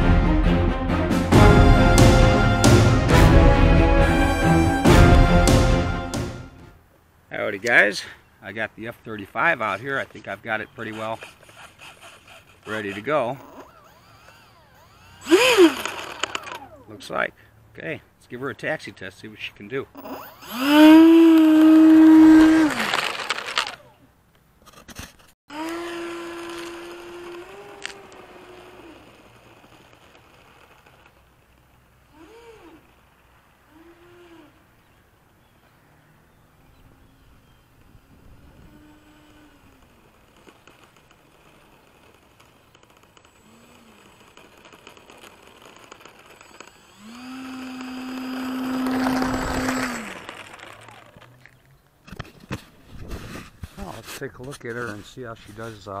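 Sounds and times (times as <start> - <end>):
electric ducted fan whine: 10.6 - 17.1, 36.8 - 51.6.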